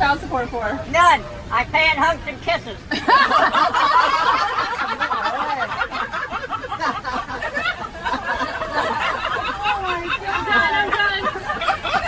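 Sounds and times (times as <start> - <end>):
people laughing together: 2.9 - 12.0.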